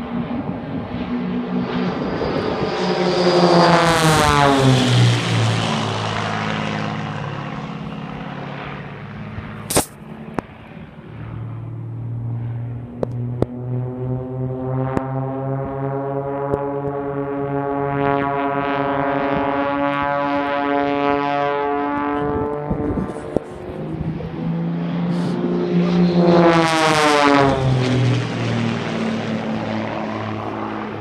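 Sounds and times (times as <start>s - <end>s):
propeller plane engine droning: 0.0s - 31.0s
sharp click: 9.7s - 10.0s.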